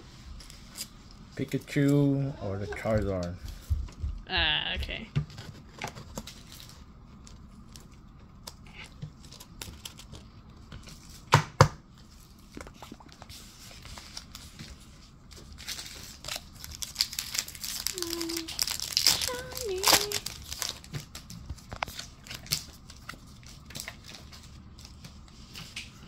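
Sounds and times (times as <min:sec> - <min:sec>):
foil wrapper tearing and crinkling: 0:05.4 - 0:11.3, 0:13.7 - 0:24.9.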